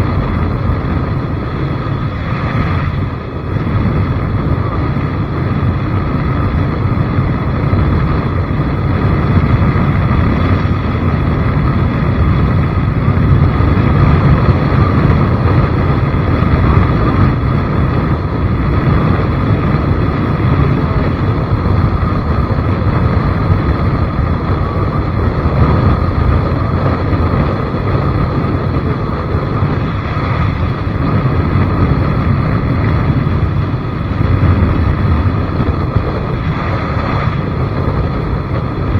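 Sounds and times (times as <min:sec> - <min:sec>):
vehicle rumble: 0:00.0 - 0:38.9
wind on microphone: 0:00.0 - 0:38.9.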